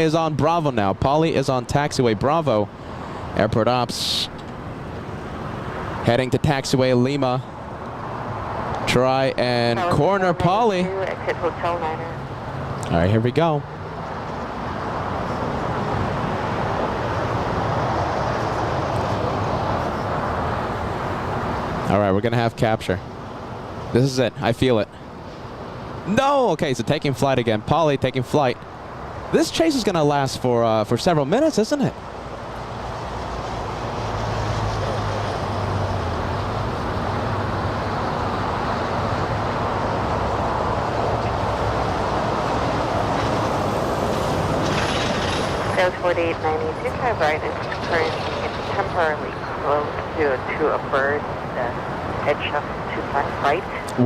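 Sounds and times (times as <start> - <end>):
jet engines roaring: 41.3 - 54.0.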